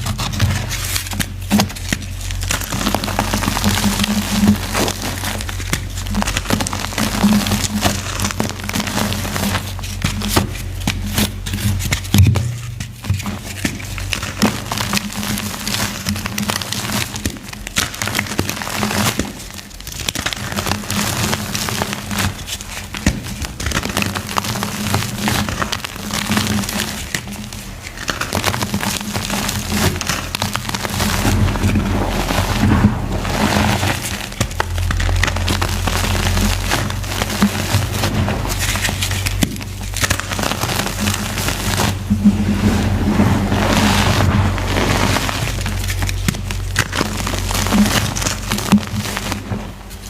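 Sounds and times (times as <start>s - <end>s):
chalk crushed crackling: 0.0s - 50.0s
steady low tone: 30.0s - 48.7s.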